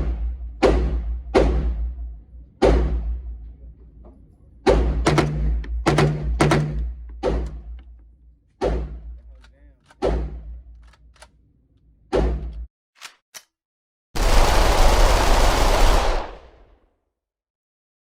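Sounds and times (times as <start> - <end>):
gunshots with echo: 4.6 - 7.7, 14.2 - 16.7.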